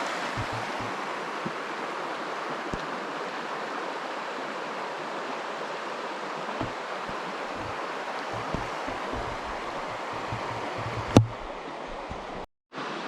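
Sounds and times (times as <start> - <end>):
river water rushing: 0.0 - 13.0
low bumps: 0.4 - 0.9, 6.6 - 12.5.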